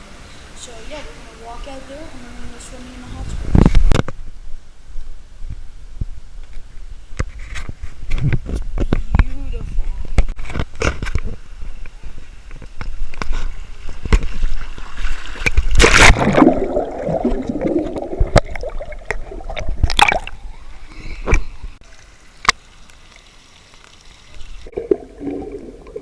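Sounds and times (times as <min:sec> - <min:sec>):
water sloshing and gurgling: 0:13.0 - 0:21.8, 0:24.3 - 0:26.0
big water splashes: 0:13.6 - 0:21.8.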